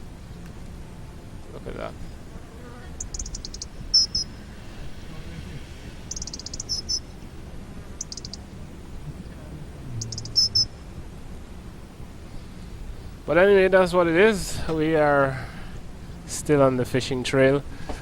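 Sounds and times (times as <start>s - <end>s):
small animal trilling call: 2.9s - 4.3s, 6.1s - 7.0s, 8.0s - 8.4s, 10.0s - 10.8s.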